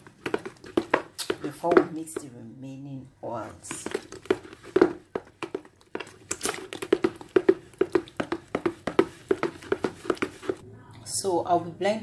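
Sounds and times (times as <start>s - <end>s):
utensil knocking and scraping bowl: 0.0s - 2.4s, 3.4s - 10.6s.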